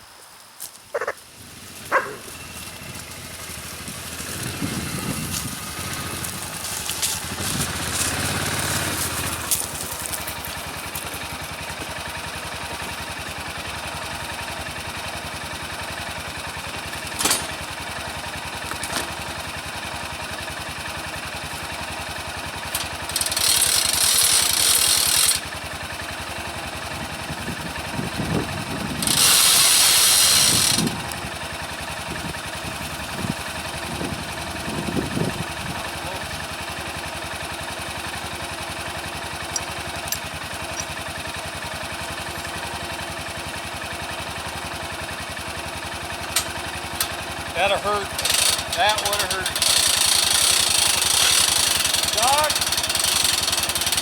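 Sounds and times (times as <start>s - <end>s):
engine running: 0.0s - 54.0s
loud hissing bursts: 29.1s - 30.9s.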